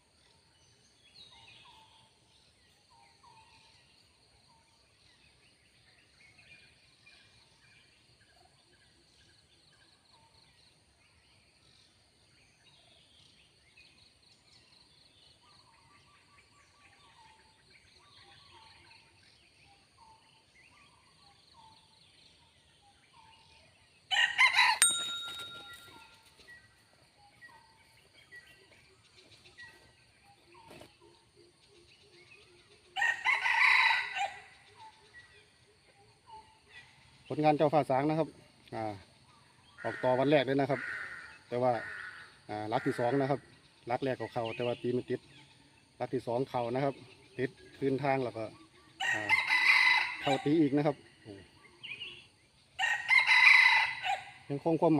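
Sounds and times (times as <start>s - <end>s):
faint forest birdsong: 0.0s - 54.9s
rooster crowing: 24.1s - 24.8s, 33.0s - 34.4s, 49.0s - 50.5s, 52.8s - 54.4s.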